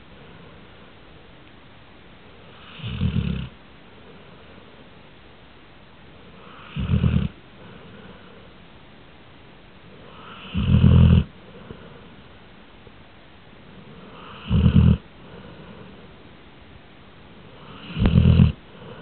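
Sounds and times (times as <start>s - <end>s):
quiet breathing: 0.0s - 1.4s, 3.5s - 5.2s, 5.8s - 12.8s, 13.5s - 19.0s
pet snoring: 2.5s - 3.6s, 6.4s - 8.3s, 10.0s - 12.0s, 13.9s - 16.0s, 17.5s - 19.0s.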